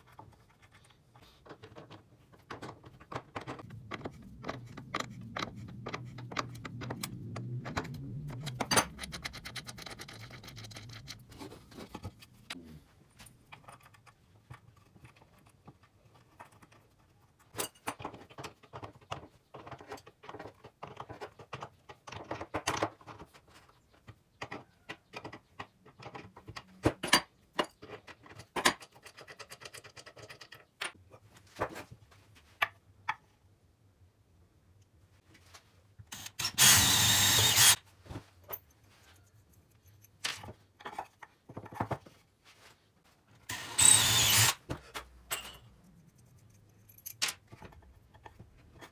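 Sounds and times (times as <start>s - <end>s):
low hum: 3.6s - 12.5s
tools rattling on a workbench: 13.2s - 31.0s, 43.8s - 48.9s.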